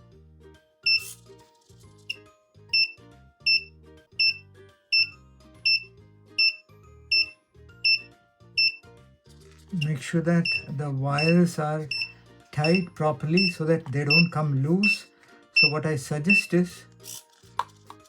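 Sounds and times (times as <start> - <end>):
background music with slow chords: 2.1 - 17.0
high-pitched electronic beeps: 6.4 - 8.0, 9.8 - 15.0.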